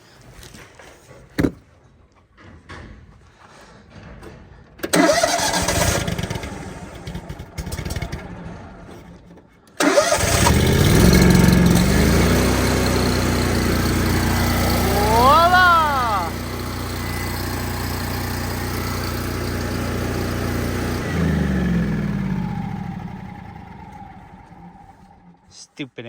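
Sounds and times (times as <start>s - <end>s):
starter cranking engine: 4.8s - 25.4s
gasoline engine running: 4.8s - 25.6s.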